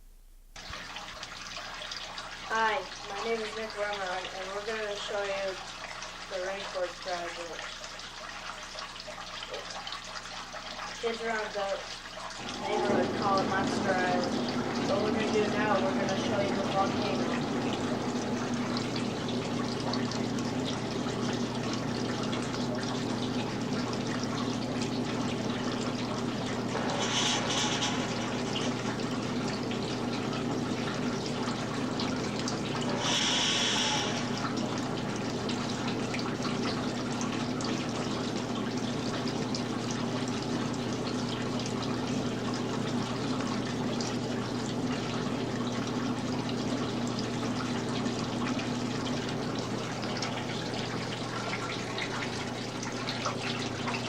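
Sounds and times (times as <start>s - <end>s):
water trickling: 0.5s - 54.0s
steady low hum: 10.6s - 54.0s
short hisses: 26.9s - 28.3s, 33.0s - 34.2s.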